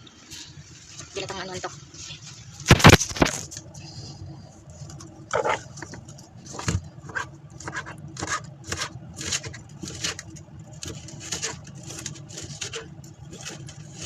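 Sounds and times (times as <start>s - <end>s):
scrape: 10.9s - 14.0s.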